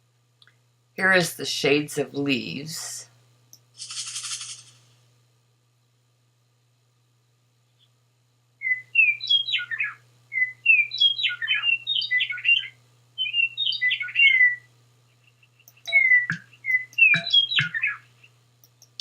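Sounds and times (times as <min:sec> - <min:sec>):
faint low hum: 0:00.0 - 0:19.0
electronic bird chirping: 0:08.7 - 0:18.3.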